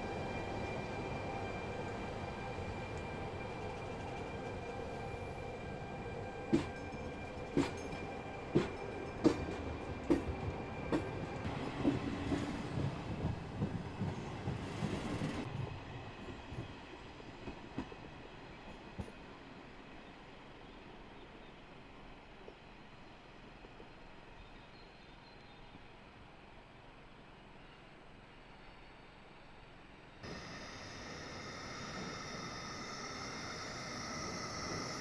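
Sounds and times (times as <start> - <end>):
train wheels knocking on rails: 6.5 - 15.5.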